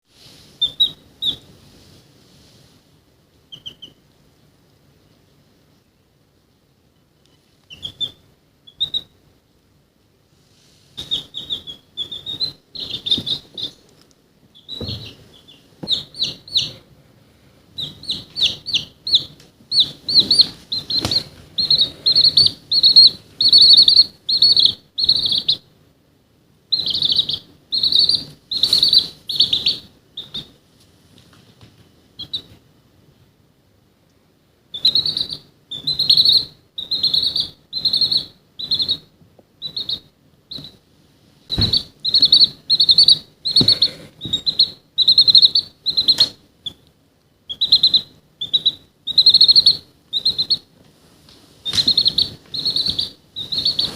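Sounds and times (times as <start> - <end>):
chick peeping: 0.2 - 1.5, 3.5 - 4.1, 7.2 - 9.2, 10.9 - 16.9, 17.7 - 25.8, 26.7 - 30.6, 32.2 - 32.6, 34.7 - 40.9, 41.5 - 46.9, 47.5 - 50.7, 51.6 - 53.9.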